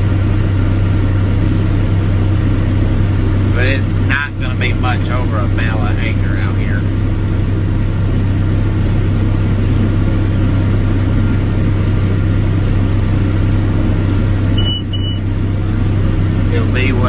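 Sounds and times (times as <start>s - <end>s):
tractor engine droning: 0.0s - 17.0s.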